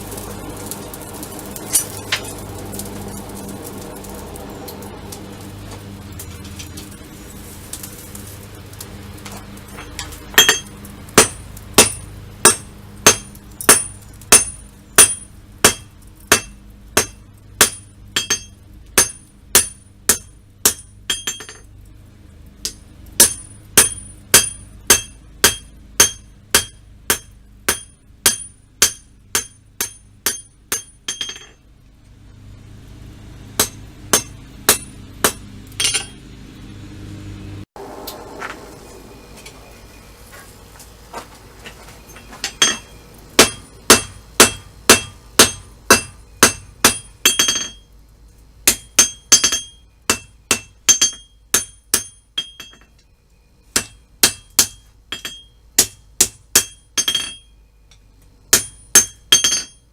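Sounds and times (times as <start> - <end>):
low hum: 0.0 - 59.8
hammer ringing on anvil: 10.4 - 21.7, 22.6 - 31.6, 33.6 - 36.2, 42.4 - 47.9, 48.7 - 53.0, 53.8 - 57.6, 58.5 - 59.9.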